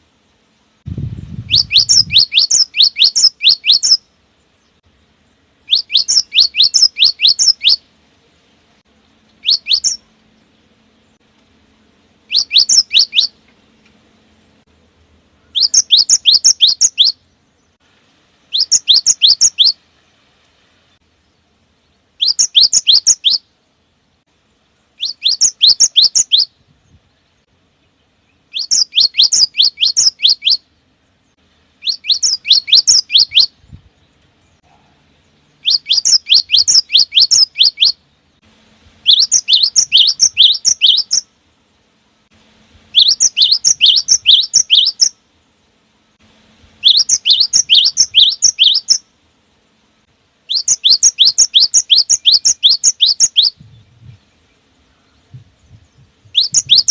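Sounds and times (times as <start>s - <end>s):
bird singing whistled notes: 1.0s - 7.9s, 8.9s - 11.2s, 12.2s - 13.5s, 15.4s - 17.8s, 18.5s - 19.8s, 21.2s - 24.0s, 24.8s - 38.4s, 39.0s - 41.3s, 42.9s - 45.2s, 46.8s - 49.1s, 50.4s - 56.9s.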